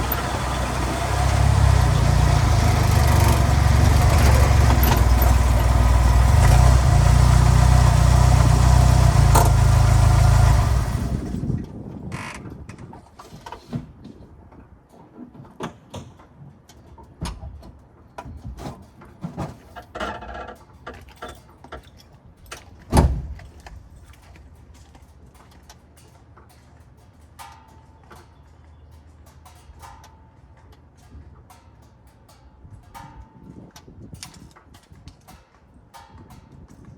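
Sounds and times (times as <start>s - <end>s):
scattered clicks and knocks: 0.0s - 7.0s, 8.2s - 10.0s.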